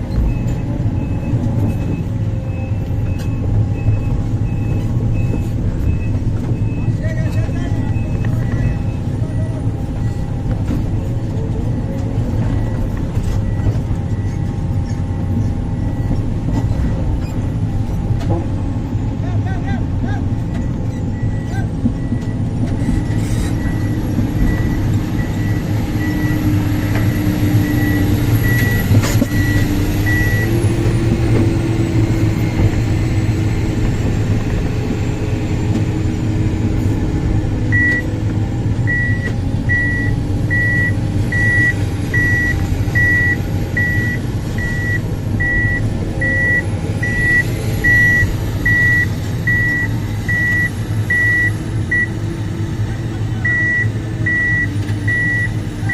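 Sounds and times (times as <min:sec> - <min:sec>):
heavy diesel machine running: 0:00.0 - 0:55.9
alarm beeping: 0:38.9 - 0:52.2.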